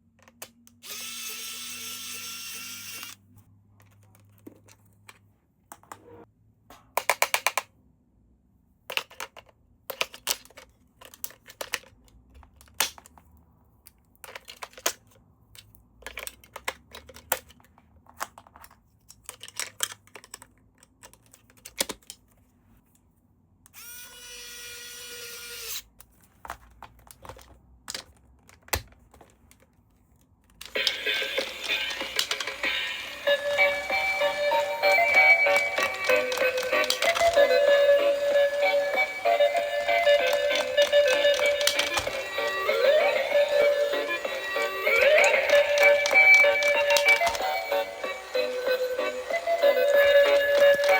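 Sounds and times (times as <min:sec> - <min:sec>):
toy packaging clicks and crinkles: 0:00.0 - 0:03.2, 0:08.9 - 0:22.4, 0:25.5 - 0:50.9
toy playing electronic tune: 0:30.7 - 0:50.9.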